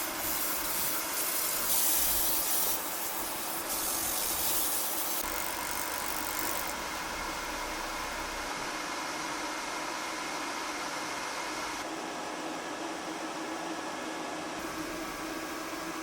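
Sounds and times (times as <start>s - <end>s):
laser engraver hissing: 0.0s - 11.8s
faint machine hum: 0.0s - 16.0s.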